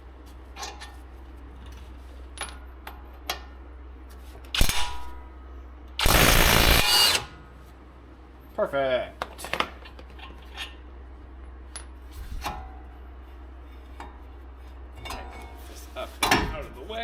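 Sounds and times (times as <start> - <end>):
impact wrench hammering: 6.0 - 7.3.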